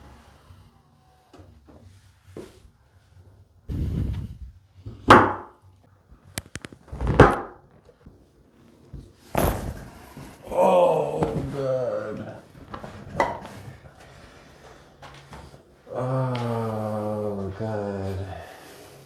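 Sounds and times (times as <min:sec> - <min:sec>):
body shuffling: 0:07.8 - 0:18.2.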